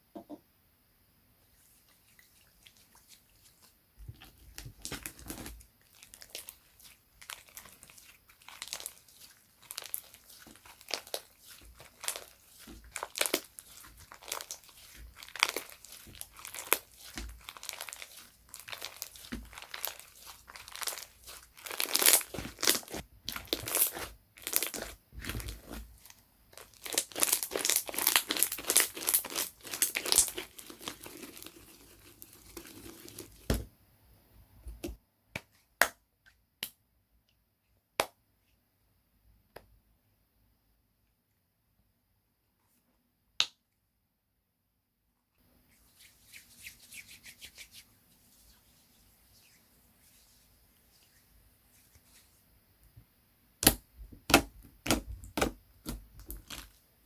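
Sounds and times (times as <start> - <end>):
slime crackling and popping: 4.5 - 33.6, 53.6 - 56.8.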